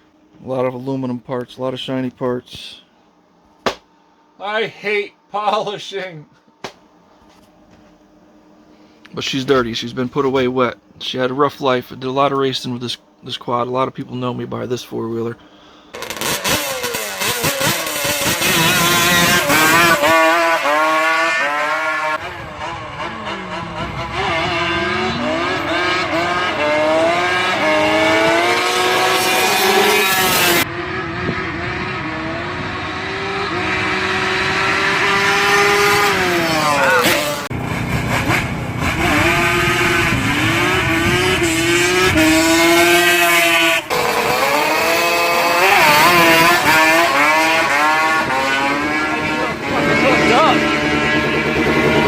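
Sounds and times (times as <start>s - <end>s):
two-stroke engine revving hard: 15.9s - 52.0s.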